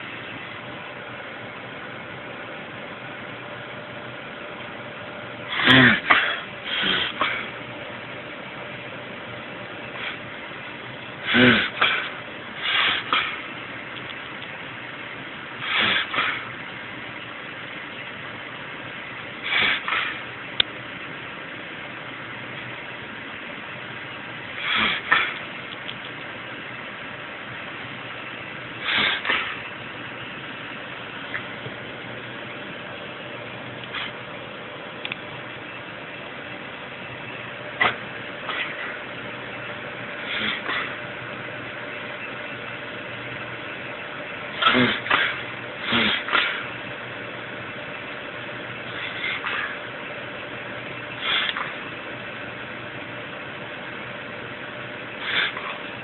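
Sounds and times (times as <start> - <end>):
steady background hum: 0.0 - 56.0
animal sneezing: 5.5 - 7.6, 10.0 - 10.3, 11.2 - 13.5, 15.6 - 16.6, 19.4 - 20.3, 24.6 - 25.4, 28.8 - 29.7, 33.9 - 34.2, 37.8 - 39.0, 40.2 - 41.0, 44.5 - 46.8, 48.8 - 49.8, 51.2 - 51.8, 55.2 - 55.9
steady hiss: 9.9 - 34.2.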